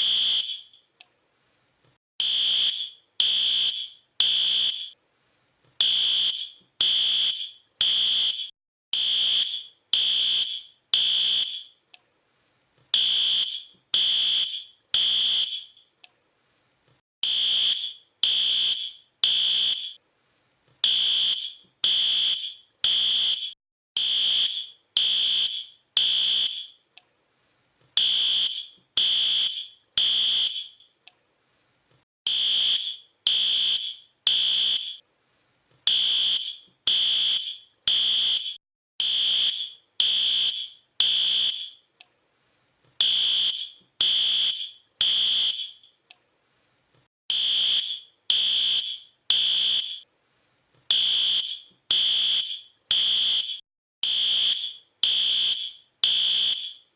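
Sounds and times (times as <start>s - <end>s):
fire alarm high-pitched beeps: 0.0s - 0.8s, 2.2s - 5.0s, 5.8s - 11.8s, 13.0s - 15.8s, 17.2s - 20.0s, 20.8s - 26.8s, 28.0s - 30.9s, 32.3s - 35.0s, 35.9s - 41.8s, 43.0s - 45.9s, 47.3s - 50.0s, 50.9s - 56.9s.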